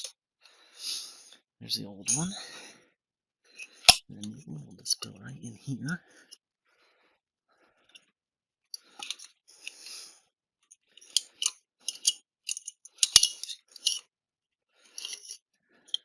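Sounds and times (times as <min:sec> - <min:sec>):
small clicks and rattles: 0:08.7 - 0:09.8, 0:10.6 - 0:14.1, 0:14.8 - 0:16.0.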